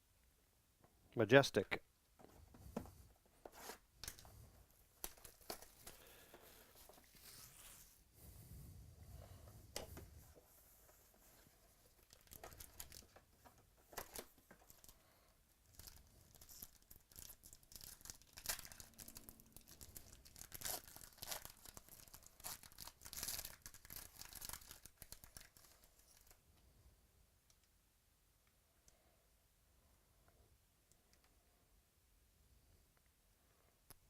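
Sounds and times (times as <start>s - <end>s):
packaging torn and crinkled: 12.0s - 13.2s, 15.7s - 26.4s.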